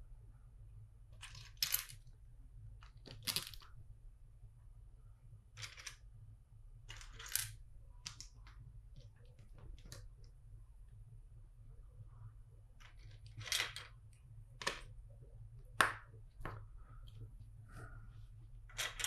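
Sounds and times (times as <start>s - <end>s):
plastic bricks clicking and rattling: 6.9s - 9.1s, 18.7s - 19.0s.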